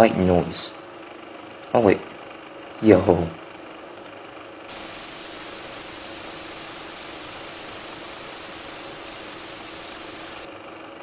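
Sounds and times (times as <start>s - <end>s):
white noise hiss: 4.7s - 10.5s.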